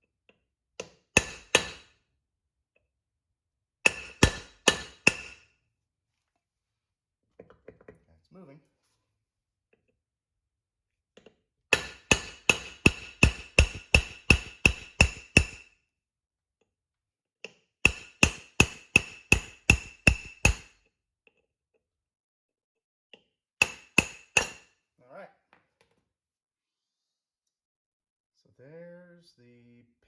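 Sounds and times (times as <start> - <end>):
hammer striking steel punch: 1.2 - 1.9, 3.9 - 5.4, 11.7 - 15.7, 17.9 - 20.8, 23.6 - 24.6.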